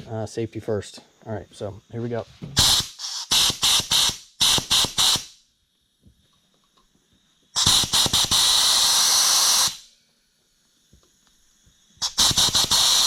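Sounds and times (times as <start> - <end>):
grit blaster hissing bursts: 2.6 - 5.4, 7.6 - 9.9, 12.0 - 13.0.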